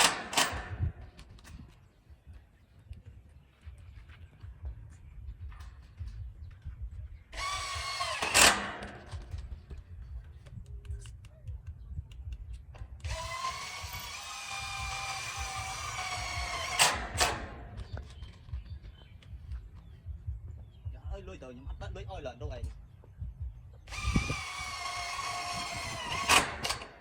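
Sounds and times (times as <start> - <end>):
power tool whining: 0.0 - 1.3, 7.3 - 9.6, 13.0 - 18.4, 23.8 - 27.0
low rumble: 0.0 - 26.7.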